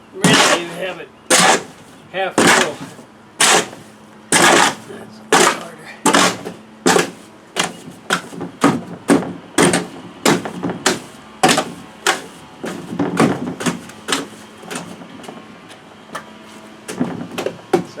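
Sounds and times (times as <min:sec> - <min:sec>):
trowel scraping wet cement: 0:00.2 - 0:08.4, 0:09.6 - 0:15.0.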